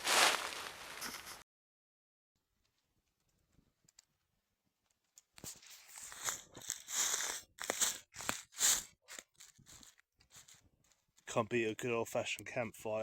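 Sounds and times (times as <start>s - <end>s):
dry crackling and crunching: 0.0s - 1.4s, 4.9s - 12.0s.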